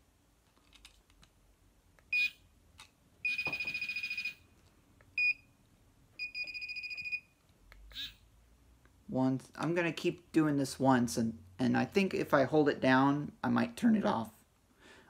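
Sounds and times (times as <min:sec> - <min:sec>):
pinpointer beeping: 0:03.2 - 0:04.4.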